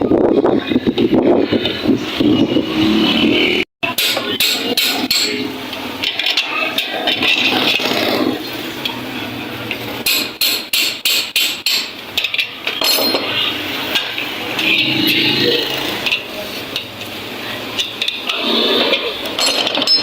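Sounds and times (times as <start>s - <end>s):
hammer striking sheet metal: 3.8s - 5.5s, 10.0s - 12.0s.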